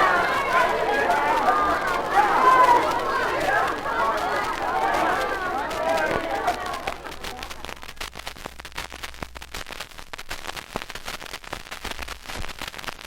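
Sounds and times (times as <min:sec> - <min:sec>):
hand claps: 0:00.0 - 0:08.0.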